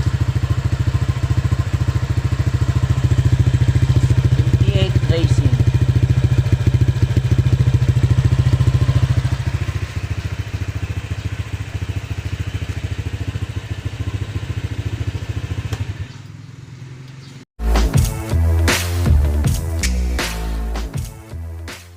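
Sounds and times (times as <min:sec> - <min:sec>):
scooter engine idling: 0:00.0 - 0:17.4.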